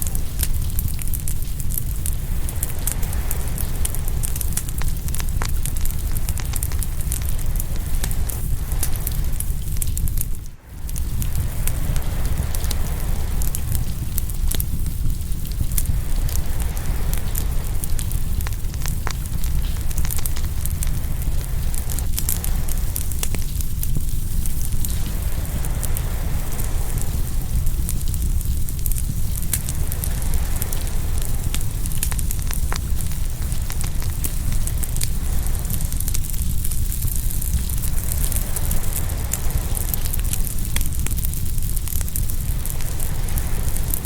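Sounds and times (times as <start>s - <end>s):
wood fire crackling: 0.0s - 44.0s
ocean surf hissing: 1.8s - 44.0s.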